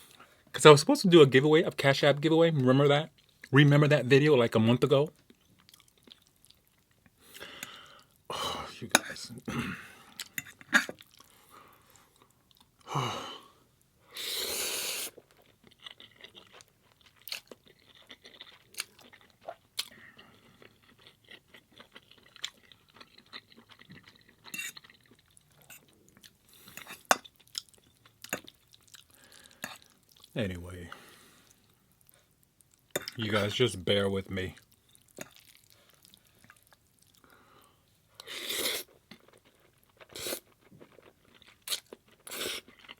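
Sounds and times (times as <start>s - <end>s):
person chewing food: 5.2s - 8.3s, 10.0s - 12.9s, 14.3s - 33.2s, 34.6s - 42.9s.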